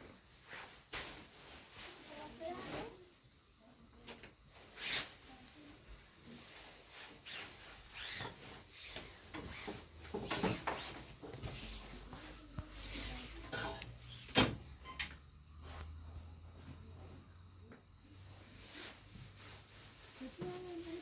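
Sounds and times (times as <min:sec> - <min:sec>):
cloth rustling: 0:00.3 - 0:03.0, 0:04.5 - 0:14.3.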